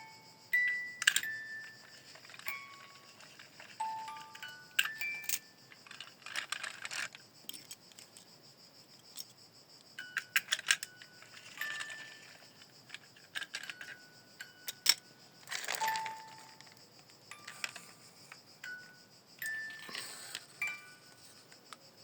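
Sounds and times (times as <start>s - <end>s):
small hard clicks and clatter: 1.0s - 8.3s, 10.2s - 14.0s, 14.6s - 18.4s.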